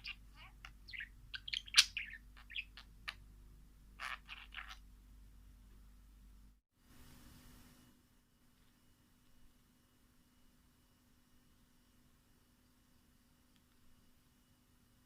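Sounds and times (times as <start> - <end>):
birds chirping: 0.0 - 3.2, 4.0 - 4.8.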